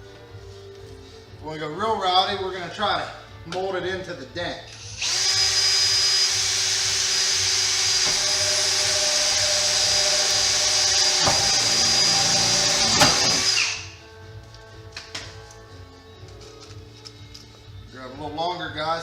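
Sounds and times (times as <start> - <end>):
electric drill whining: 4.7 - 14.0.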